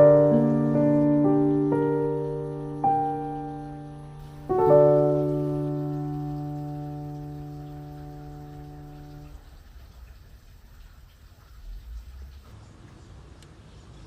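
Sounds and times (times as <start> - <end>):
soft piano music: 0.0 - 10.1.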